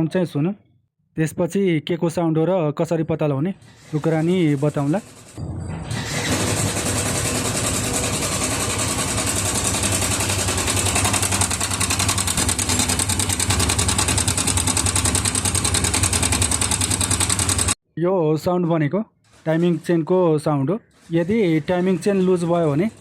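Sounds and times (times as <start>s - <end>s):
metallic timing chain rattle: 6.0s - 17.8s
motorcycle engine idling: 6.3s - 17.8s.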